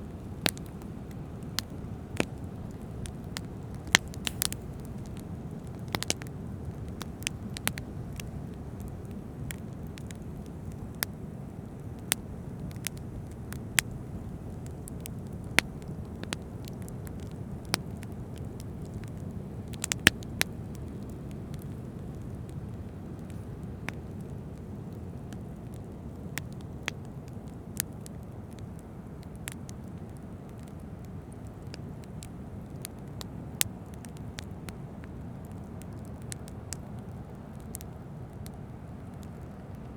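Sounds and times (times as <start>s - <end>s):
fire crackling and popping: 0.0s - 39.9s.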